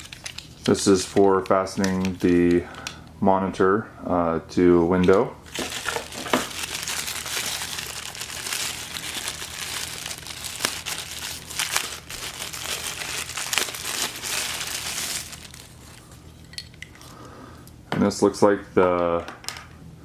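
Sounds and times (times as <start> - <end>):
plastic packaging crinkling: 0.0 - 3.0, 5.4 - 17.2.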